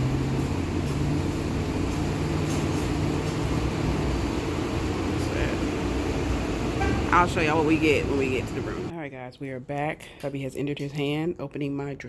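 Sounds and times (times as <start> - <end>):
car engine idling: 0.0 - 8.9.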